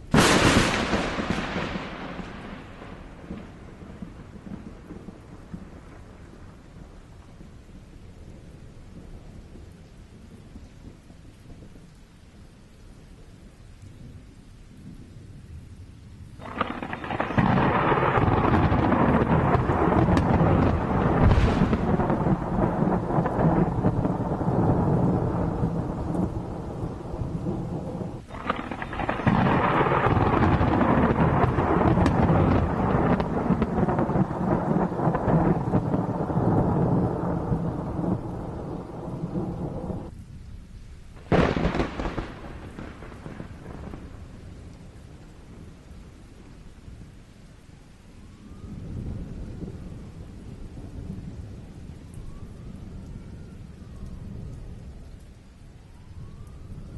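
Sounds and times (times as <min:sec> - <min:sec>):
sharp thunder crack: 0:00.0 - 0:05.8, 0:16.4 - 0:40.1, 0:41.2 - 0:44.4
rolling thunder: 0:00.0 - 0:11.8, 0:16.3 - 0:47.2, 0:48.3 - 0:56.9
steady rain: 0:00.0 - 0:56.9.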